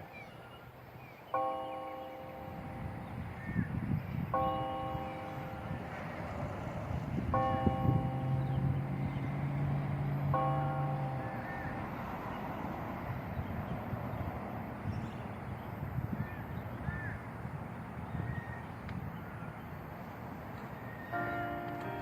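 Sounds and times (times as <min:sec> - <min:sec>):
church bell tolling: 0:01.4 - 0:15.2, 0:21.0 - 0:22.0.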